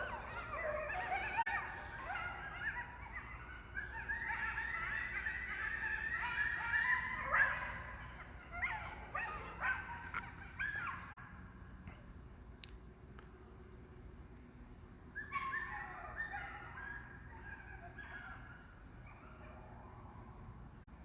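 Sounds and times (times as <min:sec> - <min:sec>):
dog-like animals yelping: 0:00.0 - 0:11.2, 0:15.2 - 0:20.6.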